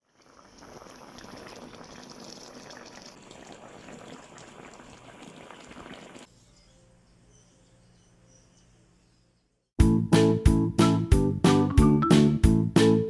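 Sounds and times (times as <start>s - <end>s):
liquid boiling in a pan: 0.0s - 6.3s.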